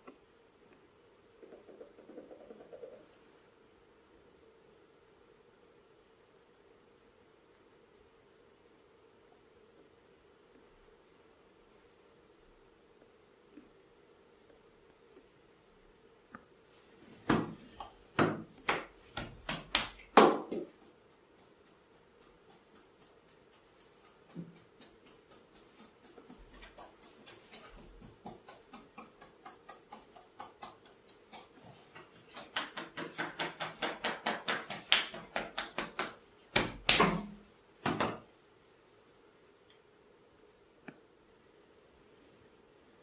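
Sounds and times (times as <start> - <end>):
massage slaps and taps: 1.4 - 3.1, 17.2 - 38.3.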